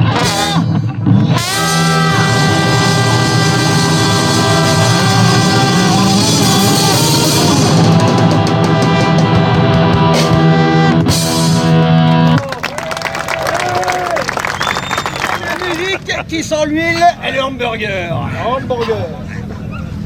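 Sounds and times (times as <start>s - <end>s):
drum kit: 0.0s - 12.4s
live rock band playing: 0.0s - 12.4s.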